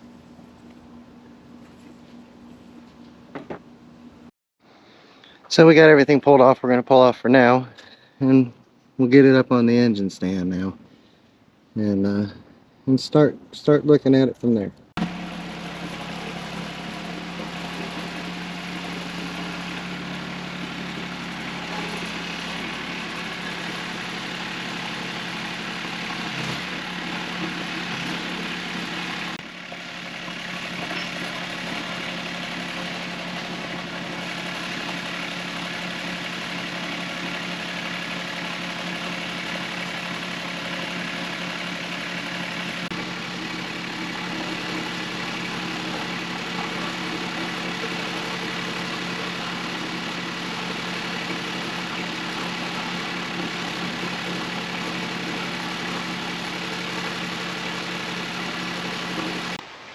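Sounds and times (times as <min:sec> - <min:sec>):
tractor engine idling: 0:15.0 - 0:59.7.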